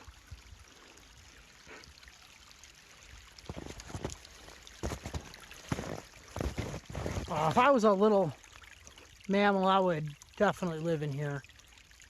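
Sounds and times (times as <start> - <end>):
stream trickling under ice: 0.0 - 12.0
footsteps in snow: 3.5 - 4.2, 4.8 - 7.5.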